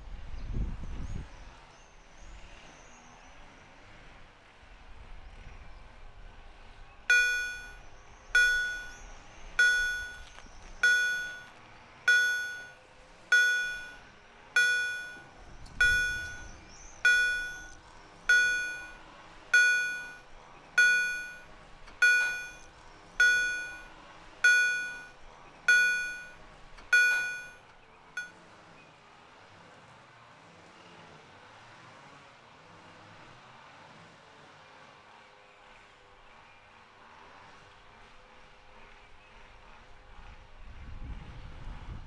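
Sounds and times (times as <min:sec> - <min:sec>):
level crossing warning bell: 0:07.1 - 0:07.8, 0:08.4 - 0:28.4.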